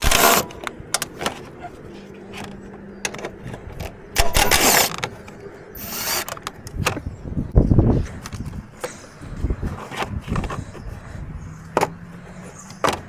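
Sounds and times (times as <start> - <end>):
ratchet rattling: 0.0 - 0.5, 4.2 - 5.0, 5.8 - 6.4
hand tools clicking and clattering: 0.0 - 1.6, 2.3 - 7.0.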